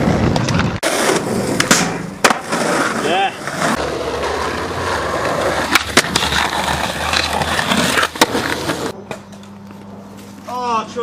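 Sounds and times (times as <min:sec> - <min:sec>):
skateboard wheels rolling: 0:00.0 - 0:09.2
skateboard clacks: 0:05.2 - 0:09.2.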